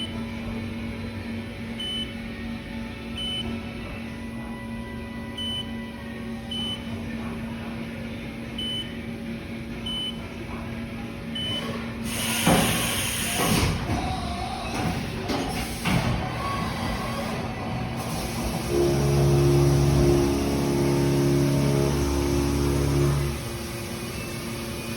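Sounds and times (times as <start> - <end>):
rushing clattering mechanical noise: 11.9 - 24.9
machine humming: 14.1 - 24.9.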